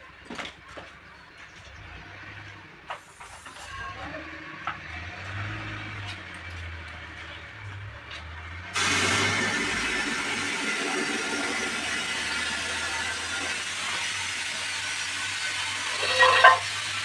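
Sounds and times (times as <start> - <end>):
compressed air hissing: 8.8 - 17.0.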